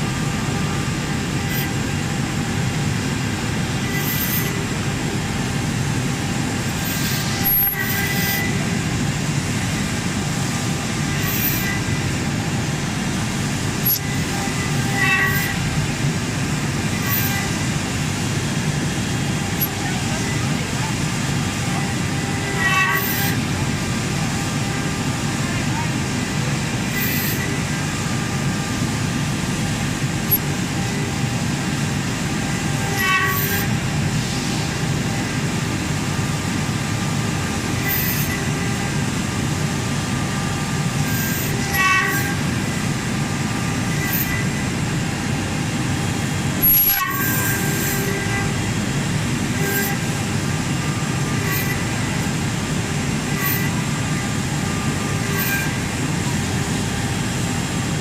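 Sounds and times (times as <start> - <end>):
cnc router running: 0.0 - 58.0
short sharp clicks or squeaks: 3.9 - 4.6, 6.8 - 8.6, 13.8 - 14.2, 17.0 - 17.6, 22.3 - 23.4, 27.0 - 27.5, 37.8 - 38.7, 41.0 - 42.4, 43.9 - 44.5, 46.6 - 48.3, 51.4 - 51.9, 53.3 - 53.8, 55.2 - 55.9.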